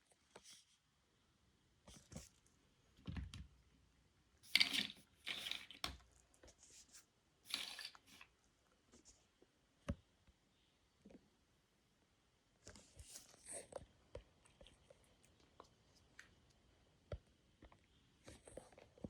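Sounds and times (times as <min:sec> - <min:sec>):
plastic bricks clicking: 0:04.5 - 0:06.0, 0:07.5 - 0:08.2.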